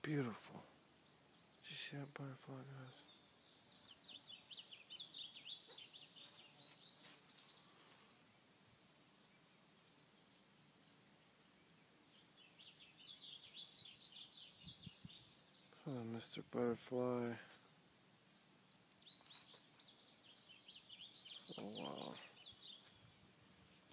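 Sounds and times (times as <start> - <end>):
bird chirps: 0.0 - 8.1, 11.7 - 17.3, 18.7 - 23.9
insect drone: 0.0 - 23.9.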